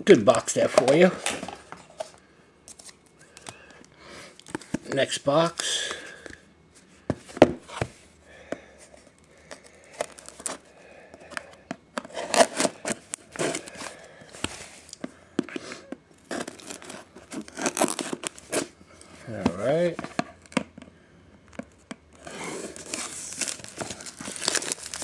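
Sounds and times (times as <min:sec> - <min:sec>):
packaging torn and crinkled: 0:09.5 - 0:10.6, 0:16.2 - 0:18.7, 0:21.7 - 0:25.0.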